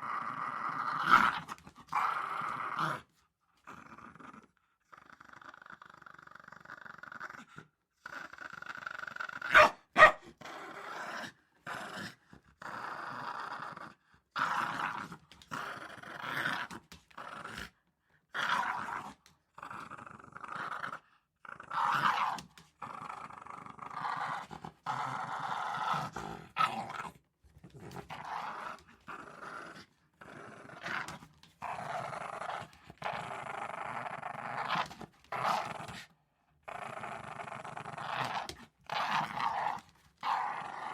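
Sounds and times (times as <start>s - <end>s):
small dog play-growling: 0.0s - 9.6s, 10.3s - 40.9s
dog barking: 9.5s - 10.2s.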